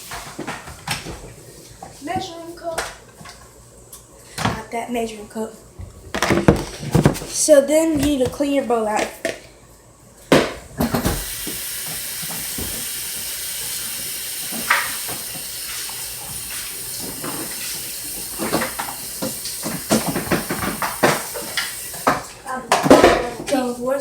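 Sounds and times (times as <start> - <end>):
kitchen tap running: 10.8 - 24.0
bowl clattering against sink: 17.0 - 23.7.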